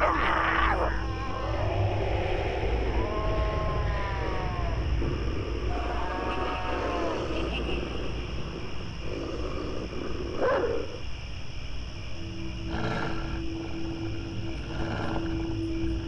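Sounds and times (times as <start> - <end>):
gliding animal-like cries: 0.0 - 8.6
steady low drone: 0.0 - 9.6, 12.0 - 16.0.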